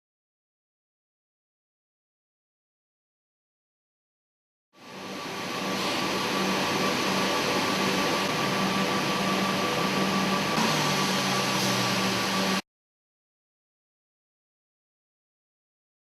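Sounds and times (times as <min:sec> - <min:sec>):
industrial vacuum running: 0:04.8 - 0:12.6.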